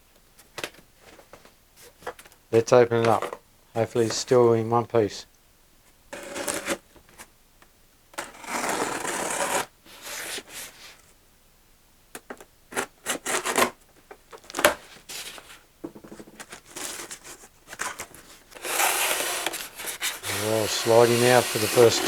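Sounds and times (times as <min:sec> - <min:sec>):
packaging rustle: 0:16.2 - 0:22.0
cardboard box flaps scraping: 0:18.6 - 0:22.0.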